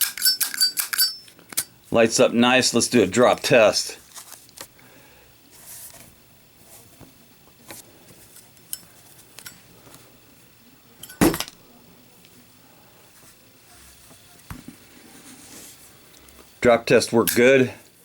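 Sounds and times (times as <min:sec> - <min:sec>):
metal lighter clattering: 0:00.0 - 0:01.7.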